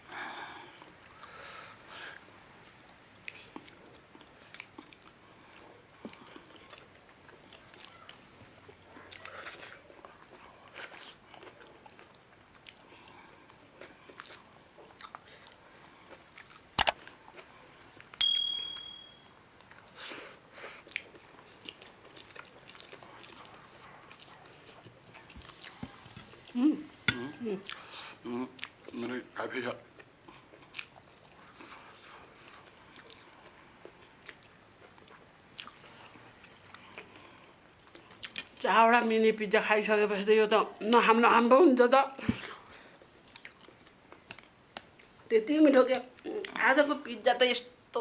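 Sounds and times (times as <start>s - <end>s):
chewing and crunching food: 2.1s - 18.2s, 19.5s - 39.1s, 42.4s - 46.7s
tap with bright ding: 18.2s - 19.2s.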